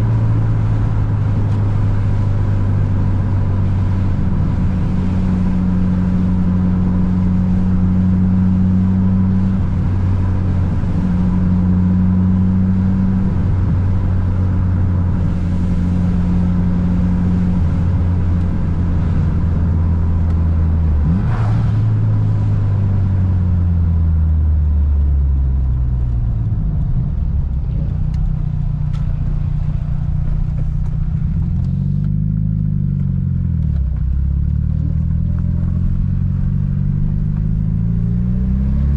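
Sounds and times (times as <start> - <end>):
turbocharged car engine revving: 0.0 - 24.7.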